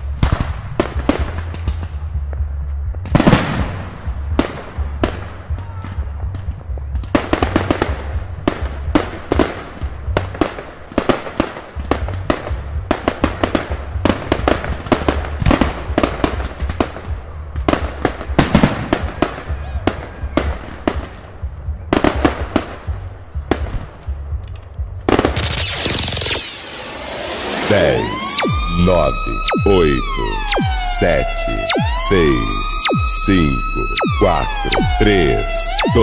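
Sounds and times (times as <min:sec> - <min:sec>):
fireworks bangs and crackles: 0:00.1 - 0:02.0, 0:03.0 - 0:21.2, 0:21.9 - 0:22.9
hissing sweep: 0:25.9 - 0:31.0.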